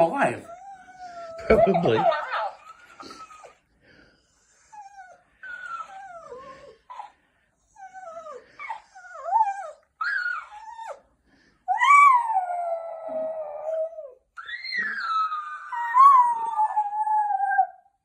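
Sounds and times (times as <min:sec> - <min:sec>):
dog whining: 0:00.1 - 0:03.6, 0:04.4 - 0:11.0, 0:11.7 - 0:17.8
dog howling: 0:11.7 - 0:17.9.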